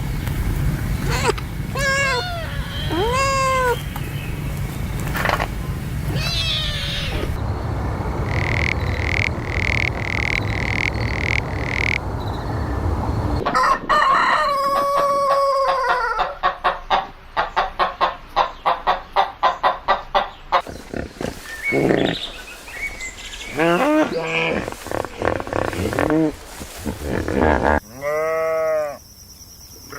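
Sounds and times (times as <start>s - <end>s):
low hum: 0.0s - 13.4s
other animal calls: 1.0s - 4.1s, 5.1s - 7.4s, 20.5s - 29.0s
rooster crowing: 13.4s - 16.4s.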